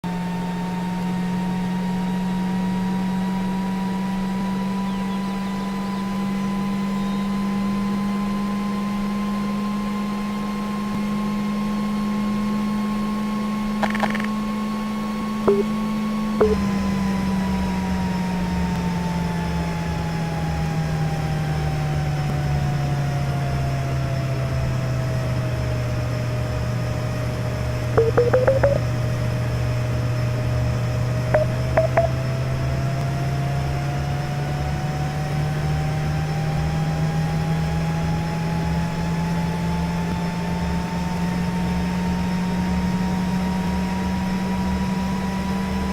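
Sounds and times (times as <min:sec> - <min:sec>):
clusters of clicks: 0:13.8 - 0:14.3, 0:28.0 - 0:28.8.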